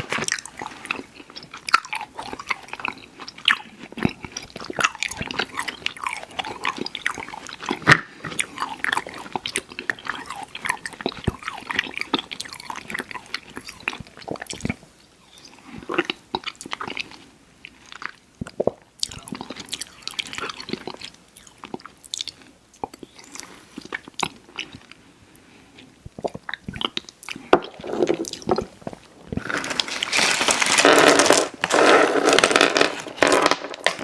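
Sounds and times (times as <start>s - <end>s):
mouth chewing sticky candy: 0.0s - 31.9s.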